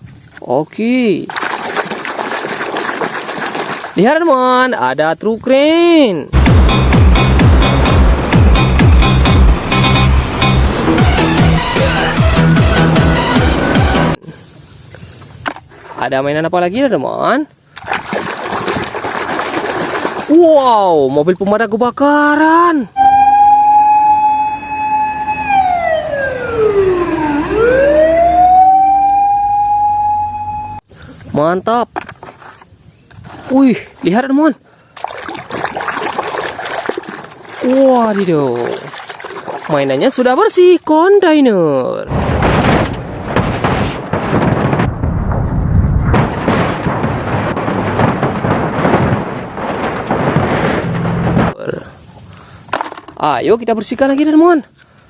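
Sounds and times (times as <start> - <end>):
water rushing and splashing: 1.3 - 4.2, 17.8 - 20.5, 33.2 - 41.0
heavy low rumble: 6.4 - 13.0, 42.1 - 51.6
fire engine siren wailing: 23.0 - 30.8.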